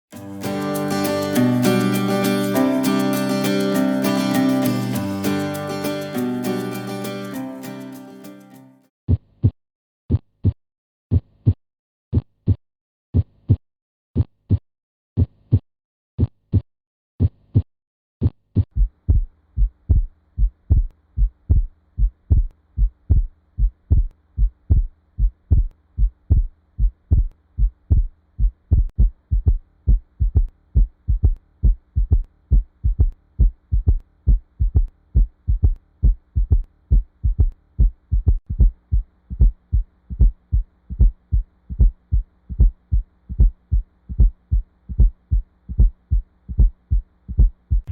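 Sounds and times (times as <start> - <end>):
heartbeat: 18.3 - 47.9.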